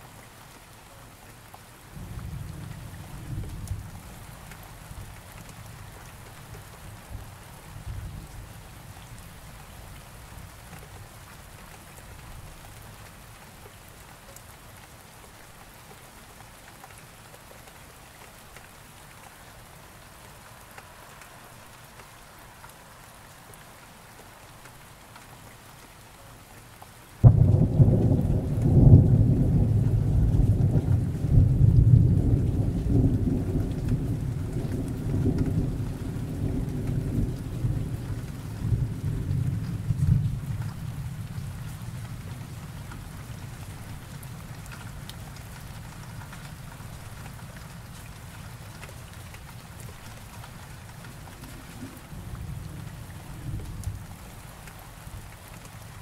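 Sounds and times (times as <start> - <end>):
steady rain falling: 0.0 - 56.0
thunder clap and rumble: 27.2 - 42.7.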